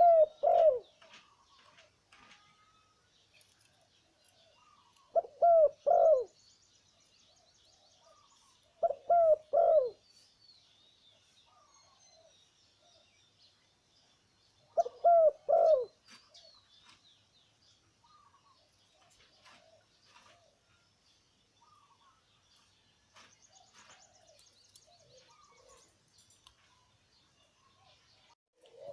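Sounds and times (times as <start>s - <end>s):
dove cooing: 0.0s - 1.8s, 4.6s - 6.4s, 8.1s - 10.0s, 14.7s - 16.0s, 23.7s - 25.9s, 28.6s - 28.9s
small birds chirping: 0.0s - 28.9s.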